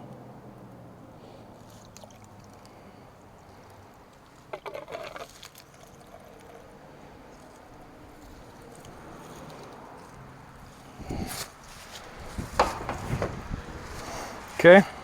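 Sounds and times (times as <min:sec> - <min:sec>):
fuel trickling from hose: 0:00.1 - 0:15.0
clicks and splashy knocks: 0:12.4 - 0:13.6.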